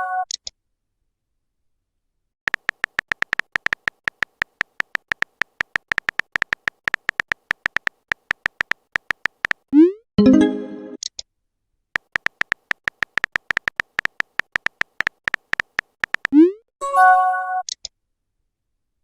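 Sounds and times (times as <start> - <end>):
short electronic typing beeps: 2.5 - 10.0, 12.0 - 16.5.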